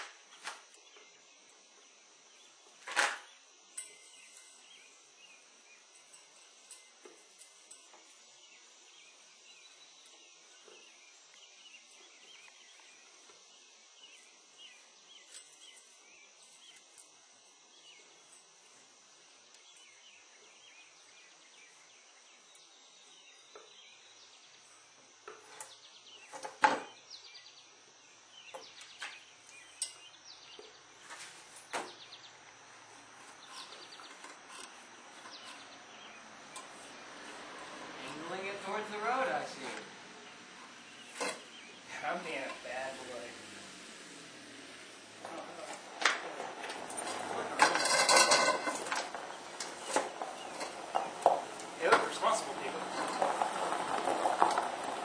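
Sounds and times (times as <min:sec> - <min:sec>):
bird chirps: 0:00.7 - 0:17.1.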